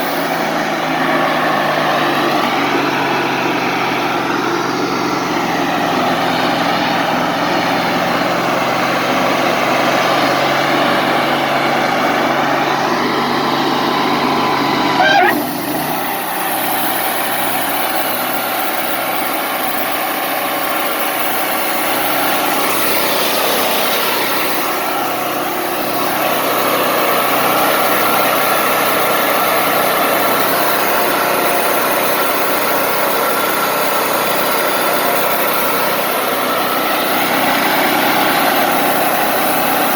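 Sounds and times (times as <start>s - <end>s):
sawmill running: 0.0s - 39.9s
brief sharp sound: 14.8s - 16.1s.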